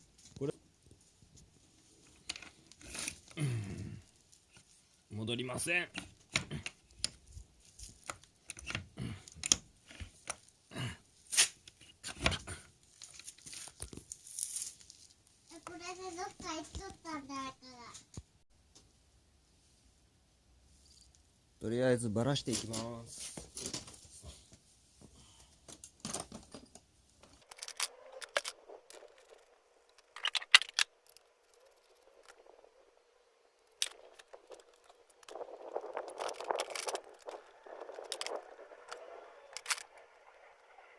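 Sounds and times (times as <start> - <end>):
tools and parts clicking and rattling: 2.0 - 3.4, 5.9 - 10.5, 11.4 - 14.6, 25.7 - 32.6, 33.6 - 40.4
clicks and knocks of handling: 5.9 - 10.5.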